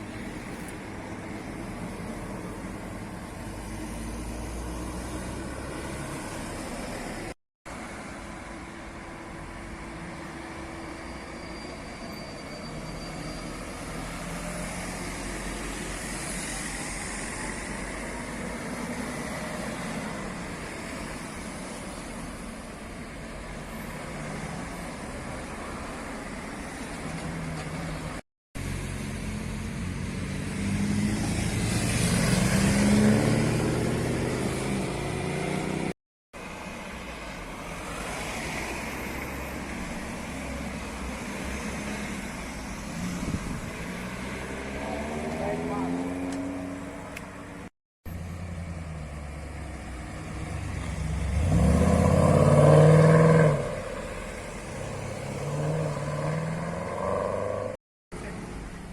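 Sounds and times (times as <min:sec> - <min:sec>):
car engines driving by: 0:00.0 - 0:58.9
car accelerating: 0:48.6 - 0:57.8.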